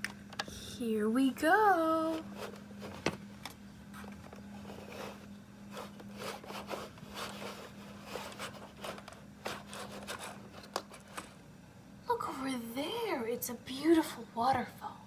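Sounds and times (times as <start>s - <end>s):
steady low hum: 0.0s - 15.0s
toy cable car rubbing and scraping: 4.6s - 10.4s.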